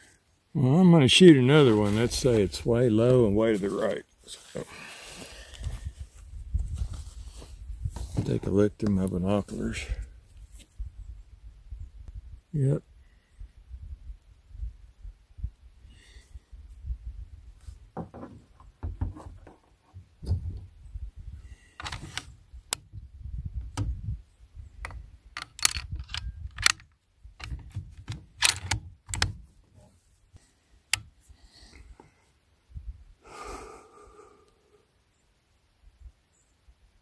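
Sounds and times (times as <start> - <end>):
gear clicking and rattling: 25.4 - 29.4.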